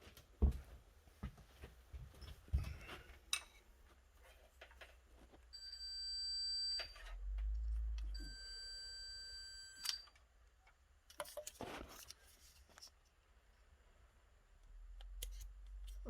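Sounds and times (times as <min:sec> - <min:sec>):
long electronic beeps: 0:08.1 - 0:10.1.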